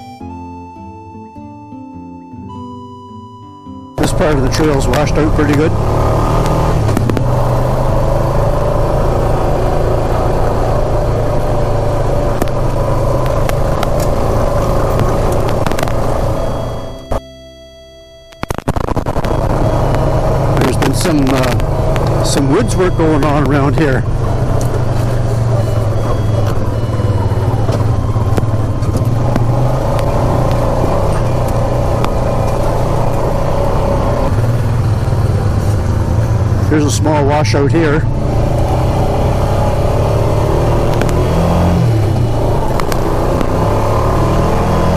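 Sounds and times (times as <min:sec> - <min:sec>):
higher engine tone: 0:00.0 - 0:44.9
atv engine running: 0:04.0 - 0:44.9
sharp clicks and knocks: 0:06.3 - 0:07.4, 0:12.3 - 0:16.2, 0:40.8 - 0:41.3
sharp clicks: 0:12.4 - 0:17.2, 0:18.3 - 0:23.4, 0:40.8 - 0:41.4, 0:42.3 - 0:44.0.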